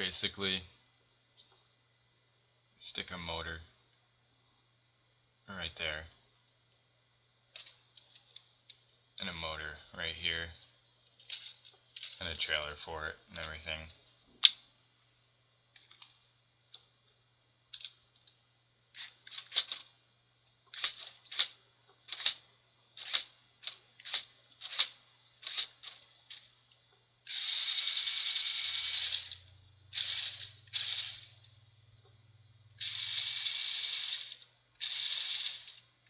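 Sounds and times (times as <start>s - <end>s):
plastic gears clicking and rattling: 7.5s - 8.4s, 11.1s - 12.3s, 17.7s - 18.3s, 18.9s - 19.9s, 20.7s - 22.4s, 23.0s - 26.5s, 27.3s - 31.4s, 32.8s - 35.9s.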